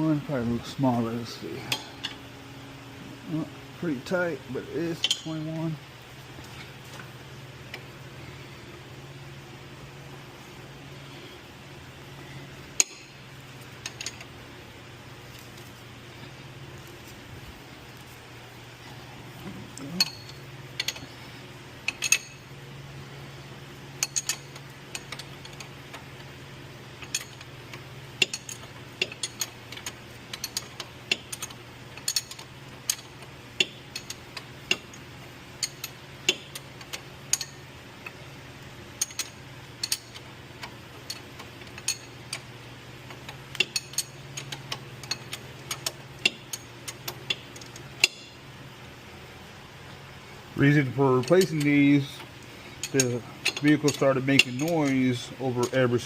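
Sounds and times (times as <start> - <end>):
steady low hum: 0.0 - 56.0
ratchet wrench clicking: 28.2 - 35.0, 39.0 - 40.2.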